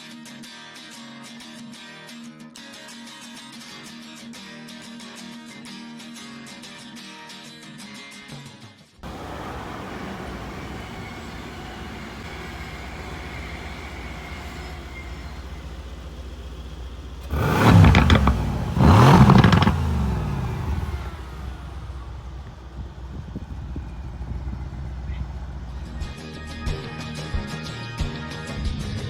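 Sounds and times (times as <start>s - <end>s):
car engine idling and revving: 9.0s - 26.2s.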